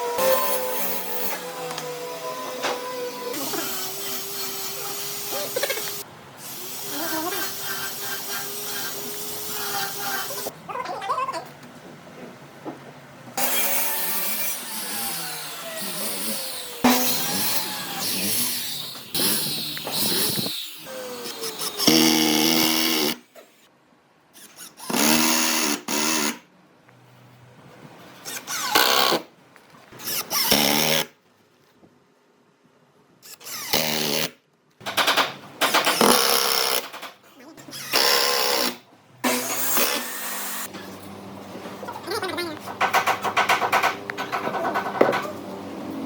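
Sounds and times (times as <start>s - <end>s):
handheld power tool running: 13.4s - 23.2s.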